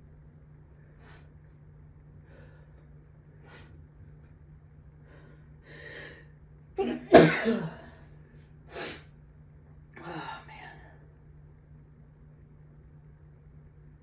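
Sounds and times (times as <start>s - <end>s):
person sneezing: 6.8s - 8.0s.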